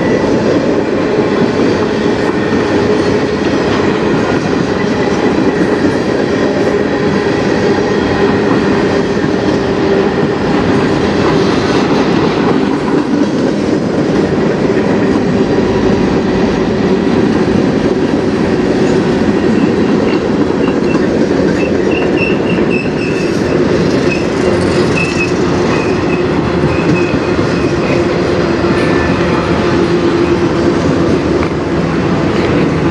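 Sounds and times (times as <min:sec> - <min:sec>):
freight train wheels rumbling: 0:00.0 - 0:32.9
high wheel squeal: 0:19.5 - 0:28.0.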